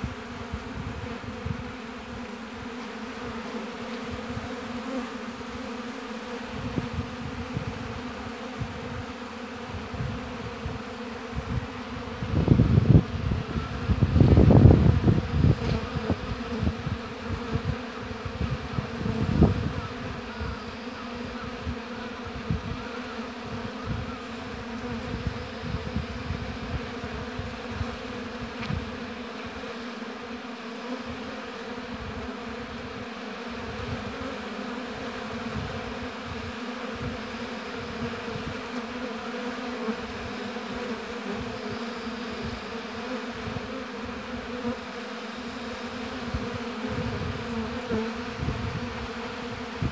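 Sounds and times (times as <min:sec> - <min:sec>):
honeybees buzzing: 0:00.0 - 0:49.9.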